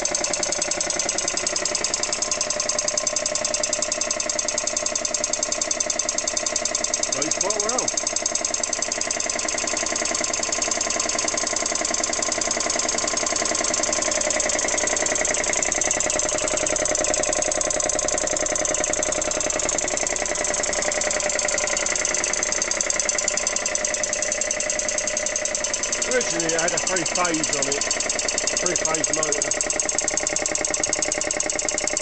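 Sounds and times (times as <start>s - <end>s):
air compressor pulsing: 0.0s - 32.0s.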